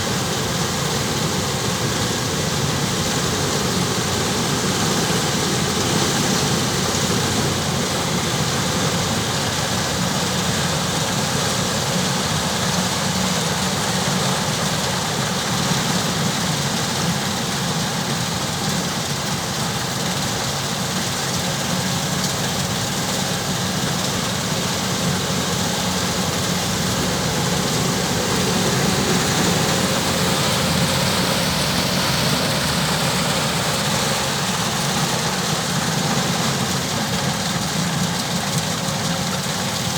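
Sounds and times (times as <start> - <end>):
combine harvester running: 0.0 - 39.9.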